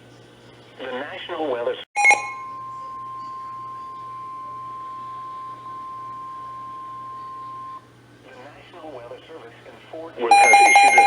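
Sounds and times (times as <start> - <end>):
steady high warning beep: 2.0 - 7.9, 10.3 - 11.0.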